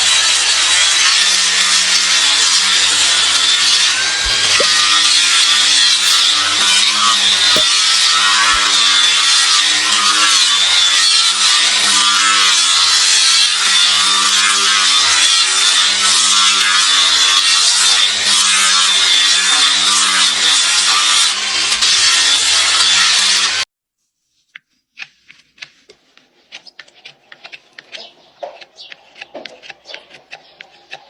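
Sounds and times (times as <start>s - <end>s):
abrasive tool grinding hoof: 2.2s - 10.4s, 24.9s - 31.0s.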